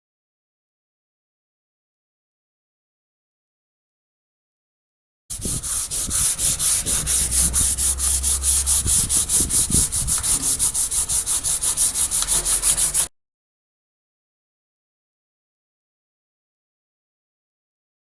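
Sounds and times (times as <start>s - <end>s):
abrasive rubbing by hand: 5.3s - 13.1s.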